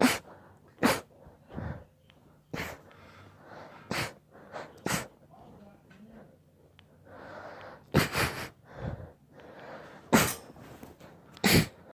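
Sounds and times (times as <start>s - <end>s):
person sneezing: 0.0s - 1.1s, 3.9s - 4.2s, 4.8s - 5.1s, 10.1s - 10.5s, 11.4s - 11.8s.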